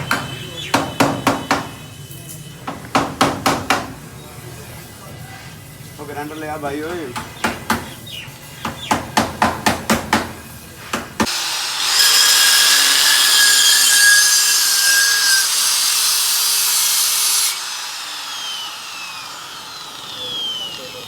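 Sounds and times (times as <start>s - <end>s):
sharp metal knocks: 0.0s - 1.8s
angle grinder cutting steel: 11.2s - 21.0s.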